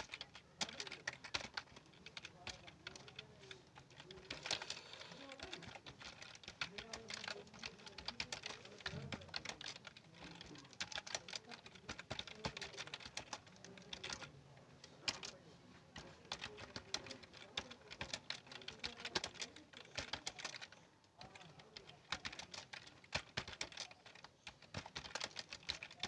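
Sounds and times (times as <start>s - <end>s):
keyboard typing: 0.0s - 14.3s, 15.0s - 15.4s, 16.0s - 26.0s.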